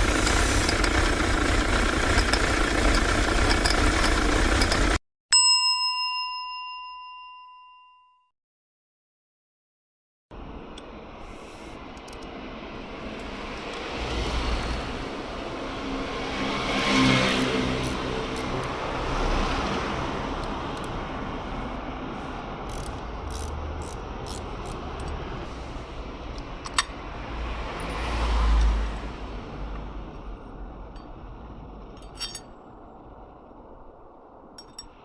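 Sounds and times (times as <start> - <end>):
road traffic passing: 0.0 - 5.0, 10.3 - 35.0
sharp clicks and metallic clinks: 0.0 - 5.0, 16.6 - 18.8, 20.4 - 21.0, 22.7 - 25.2, 26.3 - 27.0, 31.8 - 32.8, 34.5 - 35.0.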